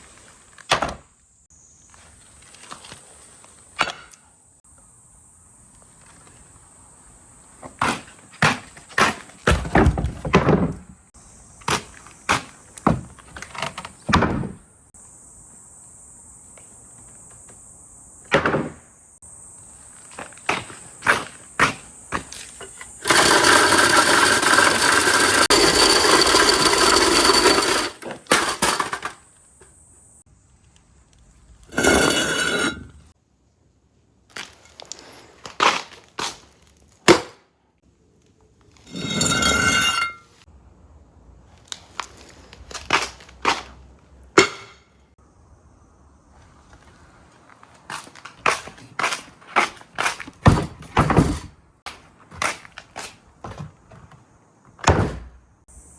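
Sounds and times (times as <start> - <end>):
marbles clicking on track: 23.0 - 27.9
marbles rolling on track: 23.0 - 29.1.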